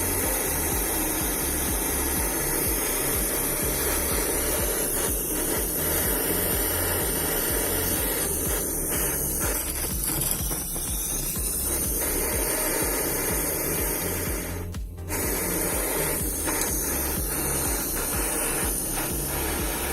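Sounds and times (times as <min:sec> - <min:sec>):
gas torch hissing: 0:00.0 - 0:19.9.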